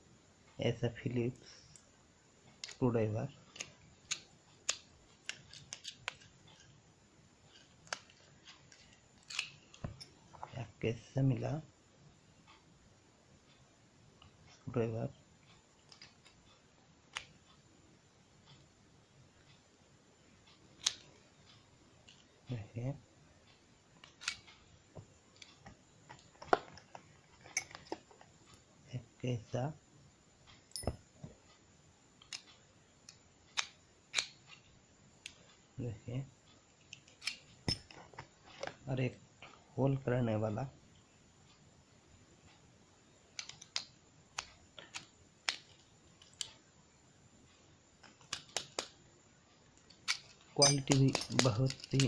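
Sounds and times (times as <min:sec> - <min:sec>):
small screwdriver parts clicking: 0:03.5 - 0:06.7, 0:07.5 - 0:10.1, 0:24.0 - 0:24.5, 0:33.1 - 0:34.4, 0:36.9 - 0:38.0, 0:43.4 - 0:46.6, 0:48.0 - 0:49.0, 0:49.8 - 0:52.0.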